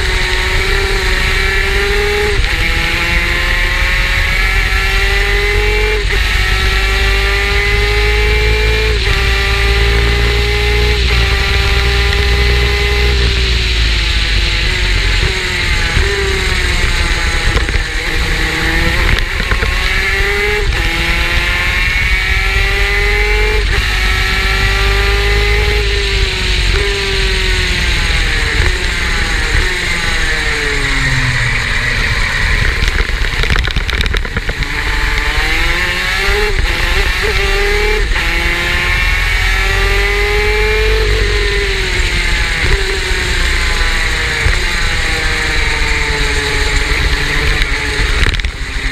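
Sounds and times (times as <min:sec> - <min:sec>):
two-stroke racing engine revving: 0:00.0 - 0:48.9
heavy low rumble: 0:05.3 - 0:36.7.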